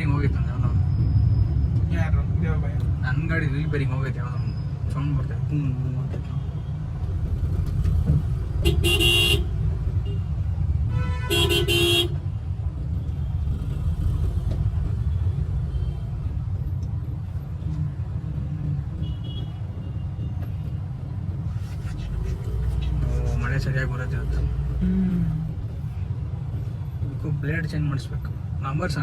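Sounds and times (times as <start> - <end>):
car horn honks: 8.6 - 10.2, 10.9 - 12.2.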